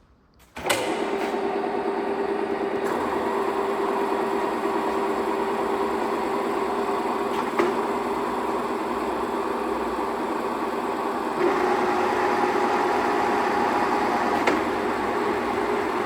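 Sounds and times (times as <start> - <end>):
milling machine humming: 1.4 - 16.0
spindle drive whine: 11.2 - 16.0.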